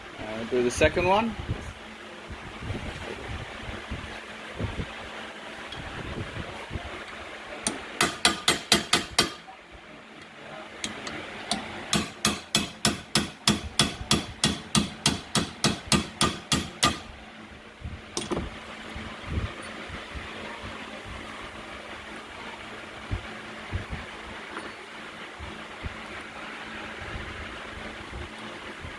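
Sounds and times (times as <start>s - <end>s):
hammer tapping on steel pin: 7.7s - 9.4s, 10.8s - 17.0s.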